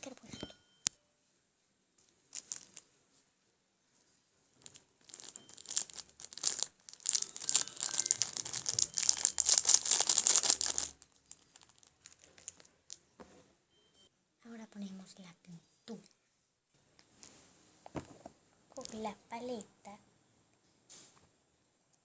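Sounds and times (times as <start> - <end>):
packet crinkling and rustling: 2.1 - 2.9, 4.6 - 13.1.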